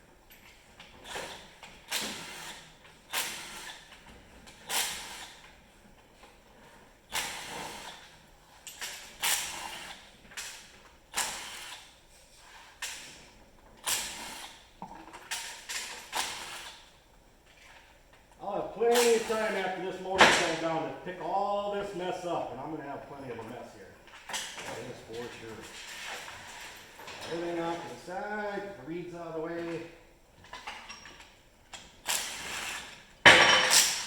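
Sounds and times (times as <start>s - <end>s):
metal tools clanking: 24.3s - 28.5s.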